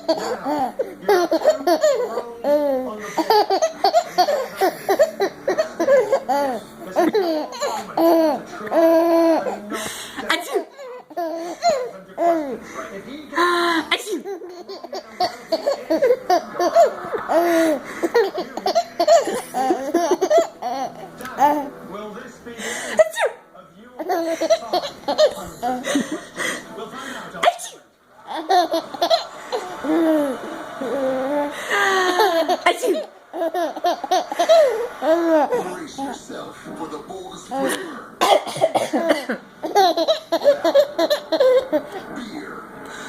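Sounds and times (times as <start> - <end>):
baby boy laughing: 0.0 - 12.6, 13.8 - 21.7, 24.0 - 26.6, 28.2 - 36.2, 39.0 - 42.1.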